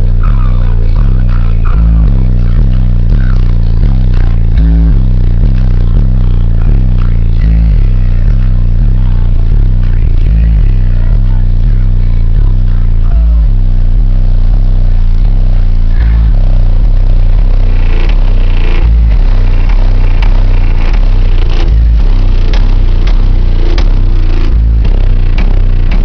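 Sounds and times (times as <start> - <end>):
bass-heavy music through subwoofers: 0.0 - 26.0
vehicle rattling: 15.6 - 26.0.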